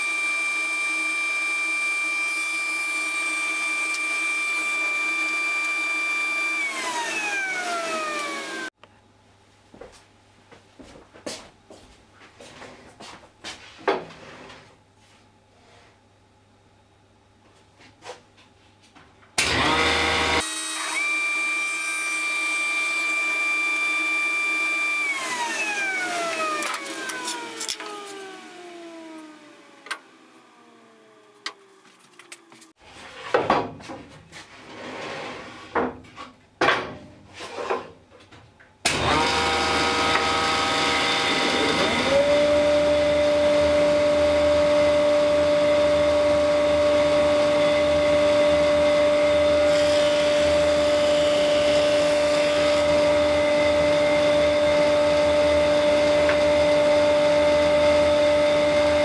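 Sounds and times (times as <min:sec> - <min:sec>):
dust extractor rushing: 0:00.0 - 0:08.7, 0:19.4 - 0:30.2, 0:38.9 - 0:59.0
power tool whining: 0:00.0 - 0:08.8, 0:19.4 - 0:31.8, 0:38.9 - 0:59.0.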